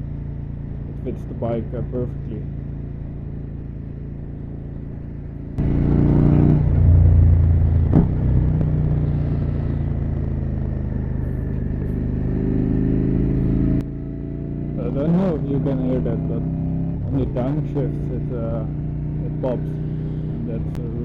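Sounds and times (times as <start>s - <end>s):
motorcycle engine running: 0.0s - 21.0s.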